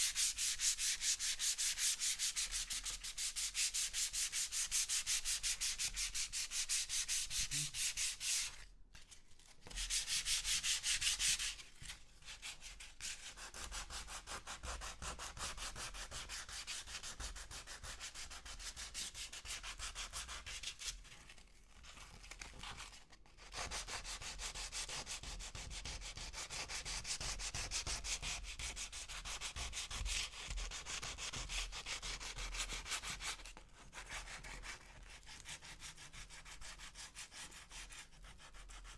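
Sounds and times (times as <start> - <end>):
sandpaper scratching on wood: 0.1 - 8.4.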